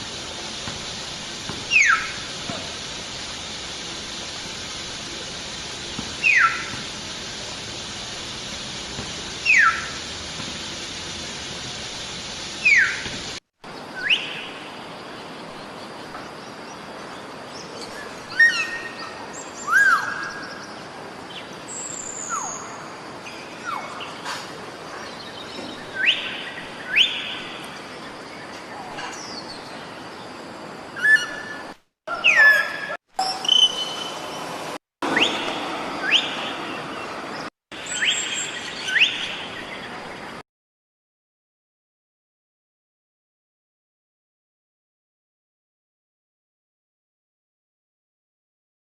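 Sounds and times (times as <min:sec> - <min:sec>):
steady high hiss: 0:00.0 - 0:31.8, 0:33.2 - 0:40.4
myna whistles and chirps: 0:06.2 - 0:06.8.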